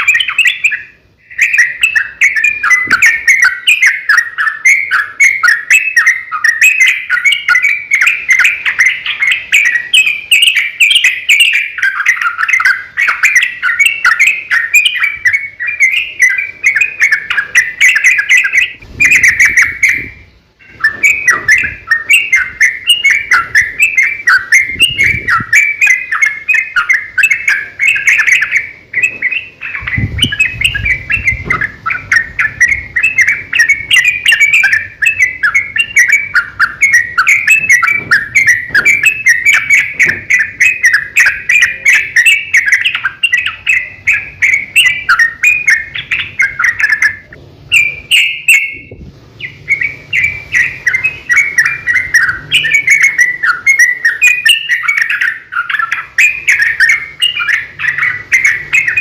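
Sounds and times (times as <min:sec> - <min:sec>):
bulbul singing bubbly chattering: 0:00.0 - 0:59.0.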